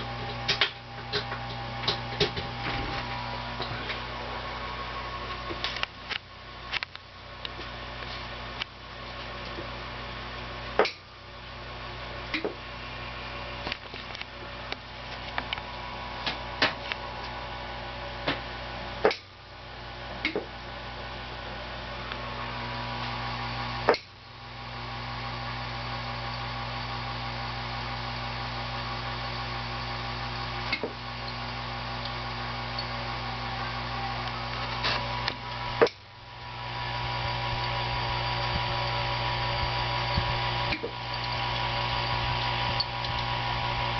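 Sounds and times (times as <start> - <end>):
vacuum tubes ticking: 0.0 - 4.2, 23.0 - 43.9
mains hum: 0.0 - 43.9.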